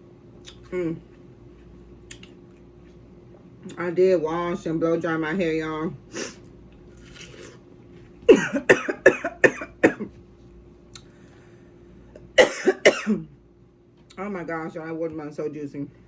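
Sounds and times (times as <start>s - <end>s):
woman coughing: 8.3s - 10.1s, 12.3s - 13.3s.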